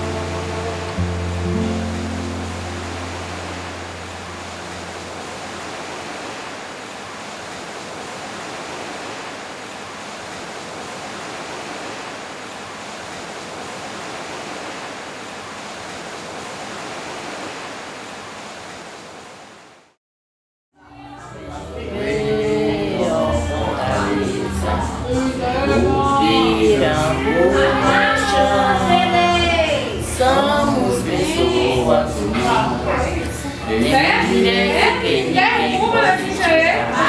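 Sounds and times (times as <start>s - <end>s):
ocean surf: 0.0s - 19.9s, 21.5s - 37.0s.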